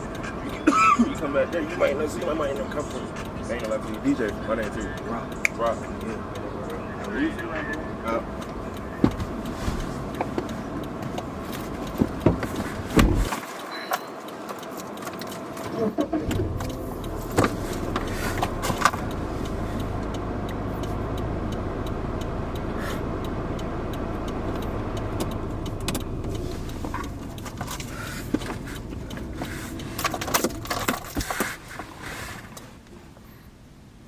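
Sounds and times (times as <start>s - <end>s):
motor vehicle rumble: 0.0s - 34.0s
clicks and light rattles: 8.1s - 20.9s, 24.5s - 32.9s.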